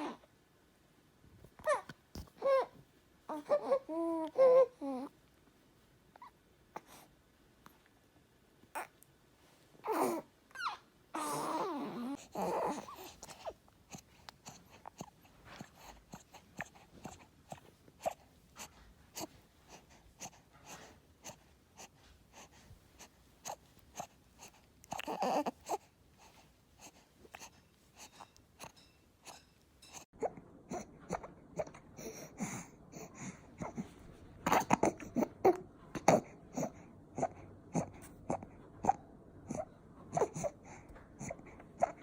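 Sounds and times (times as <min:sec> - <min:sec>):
infant squeaky stridor breathing: 0:09.8 - 0:22.6, 0:23.4 - 0:42.0.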